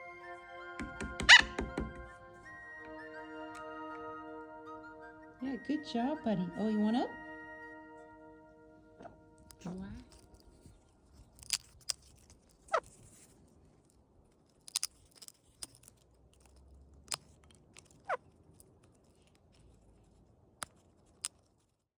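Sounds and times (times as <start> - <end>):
parrot clicks and taps: 0.8 - 2.2
parrot chirps: 1.2 - 1.7.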